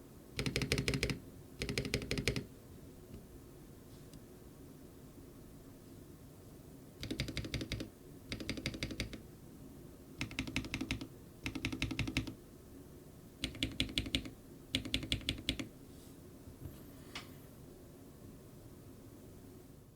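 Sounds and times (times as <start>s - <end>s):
mechanical keyboard typing: 0.4s - 2.5s, 7.0s - 9.2s, 10.2s - 12.4s, 13.4s - 15.7s.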